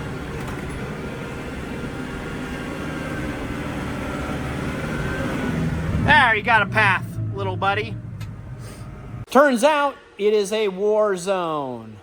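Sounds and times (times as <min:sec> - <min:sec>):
tractor diesel engine running: 0:00.0 - 0:09.3.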